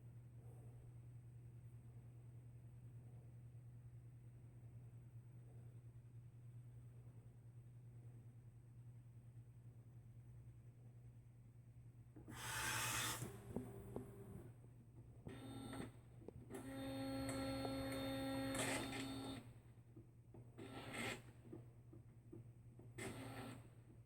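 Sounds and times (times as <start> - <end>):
constant electrical hum: 0.0 - 24.0
printer mechanical whirs: 12.2 - 14.5, 15.2 - 19.5, 20.6 - 21.3, 23.0 - 23.7
printer motor whine: 12.3 - 14.5, 15.3 - 19.5, 23.0 - 23.6.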